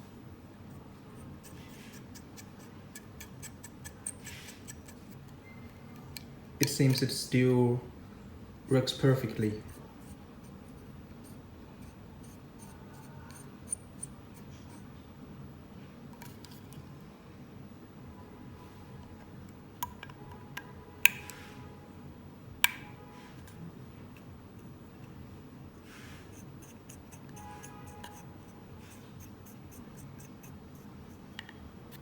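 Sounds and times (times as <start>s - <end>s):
faint room noise: 0.0s - 32.0s.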